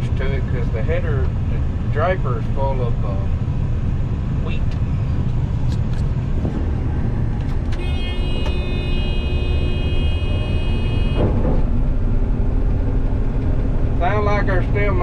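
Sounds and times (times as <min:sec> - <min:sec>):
combine harvester rumbling: 0:00.0 - 0:15.0
high-pitched tone: 0:07.8 - 0:11.3.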